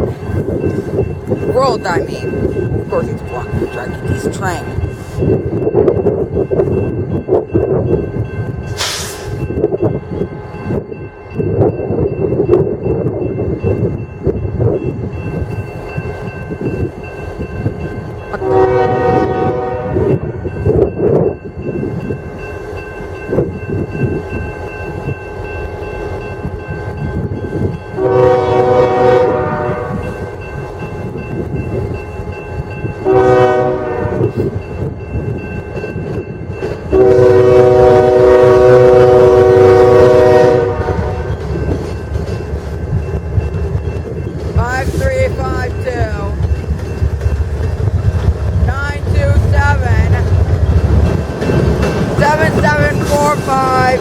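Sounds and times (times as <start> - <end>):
train rumble: 0.0 - 54.0
locomotive air horn blasts: 18.4 - 20.2, 28.0 - 30.1, 33.0 - 34.3, 36.9 - 41.3.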